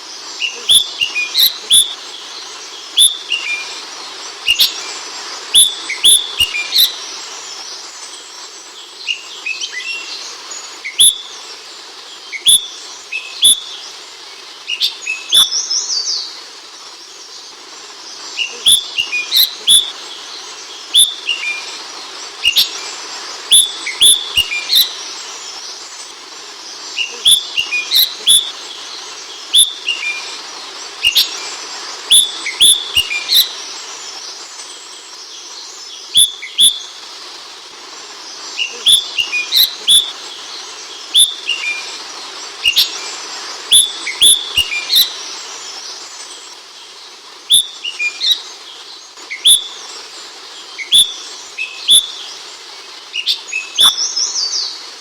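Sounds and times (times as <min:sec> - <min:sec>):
steady background hiss: 0:00.0 - 0:55.0
bird chirping: 0:00.3 - 0:07.8, 0:18.2 - 0:25.8, 0:26.6 - 0:37.0, 0:38.3 - 0:46.9, 0:47.5 - 0:54.8.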